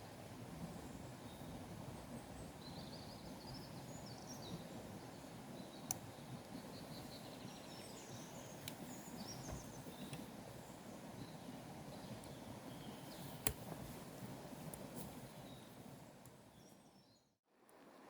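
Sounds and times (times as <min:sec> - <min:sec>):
small birds chirping: 0:02.6 - 0:13.4.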